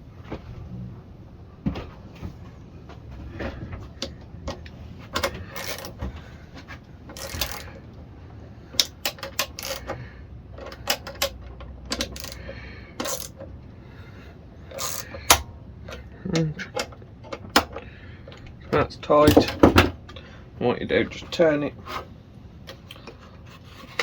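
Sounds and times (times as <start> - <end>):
hand ratchet clicking: 4.0 - 6.0, 7.1 - 7.8, 8.8 - 10.0, 10.6 - 13.5, 14.7 - 16.1.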